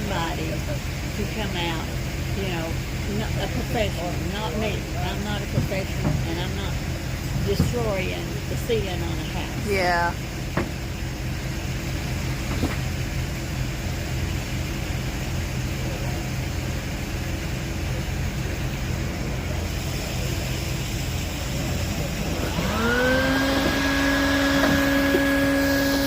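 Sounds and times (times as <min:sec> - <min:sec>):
vacuum motor whine: 0:21.4 - 0:26.0.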